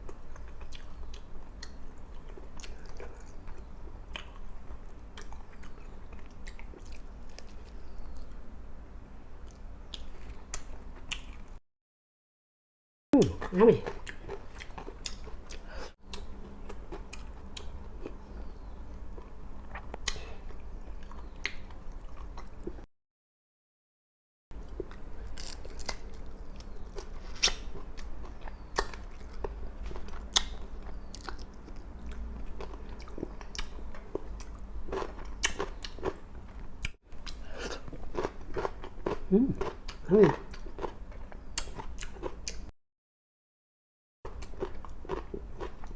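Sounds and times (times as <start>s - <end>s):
chewing crisp food crunches: 24.6s - 42.7s, 44.3s - 45.9s.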